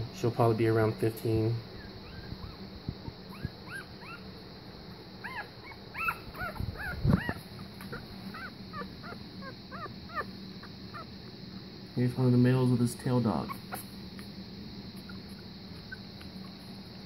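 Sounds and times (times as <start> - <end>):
puppies squeaking and whimpering: 1.7 - 4.3, 5.2 - 11.2, 13.4 - 14.0, 15.0 - 16.6.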